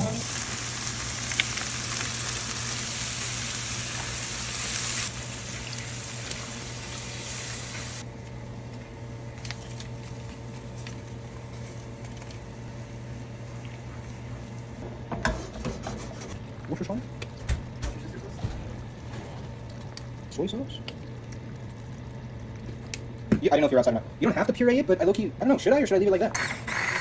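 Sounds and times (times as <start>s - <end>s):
food frying in hot oil: 0.0s - 14.8s.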